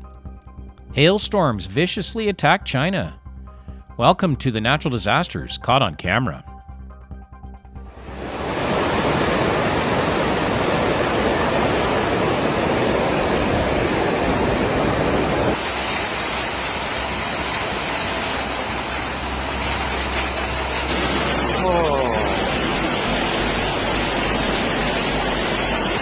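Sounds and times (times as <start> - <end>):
loud rushing water: 7.9 - 26.0.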